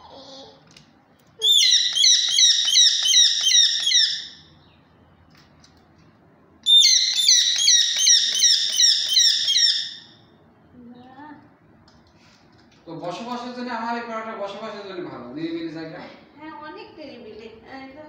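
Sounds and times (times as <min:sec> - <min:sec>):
parakeet screeching: 0:01.4 - 0:04.5, 0:06.6 - 0:10.2.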